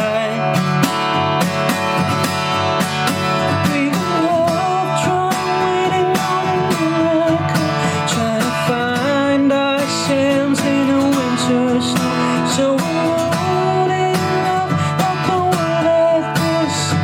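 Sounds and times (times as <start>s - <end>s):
man singing: 0.0s - 1.3s, 3.2s - 17.0s
acoustic guitar strumming: 0.0s - 17.0s.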